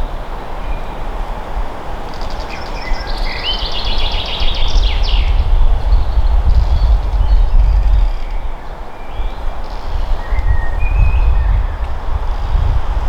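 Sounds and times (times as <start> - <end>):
songbird trilling: 2.1 - 11.9
steady low rumble: 4.6 - 8.7.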